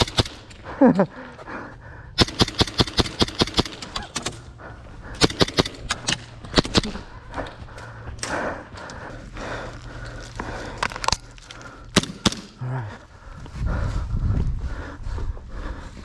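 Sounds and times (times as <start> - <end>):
airsoft guns firing: 0.0 - 0.6, 2.2 - 4.4, 5.2 - 7.2, 11.9 - 12.6.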